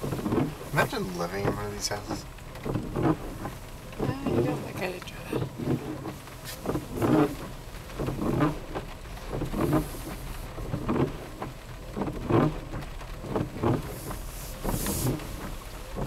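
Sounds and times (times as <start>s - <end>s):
rain hissing on a car: 0.0s - 16.0s.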